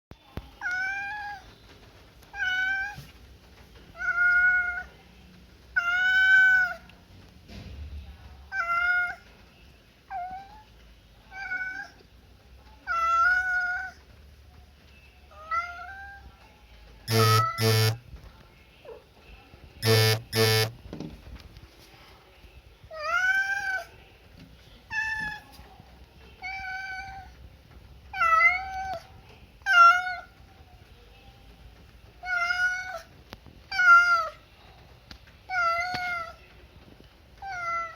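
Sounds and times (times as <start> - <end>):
loud electronic buzzes: 17.1 - 18.0, 19.8 - 20.8.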